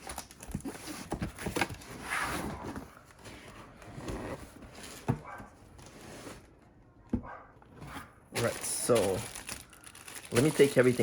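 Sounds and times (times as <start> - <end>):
packaging scraping and rustling: 8.4 - 11.0.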